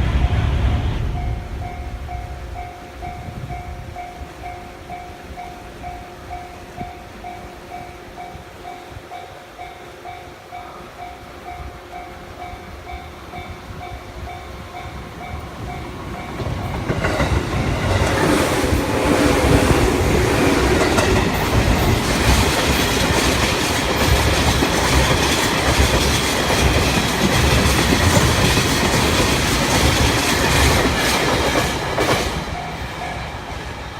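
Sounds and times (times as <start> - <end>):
train rumbling over crossing: 0.0 - 33.9
wheels clacking on rail joints: 13.4 - 33.8.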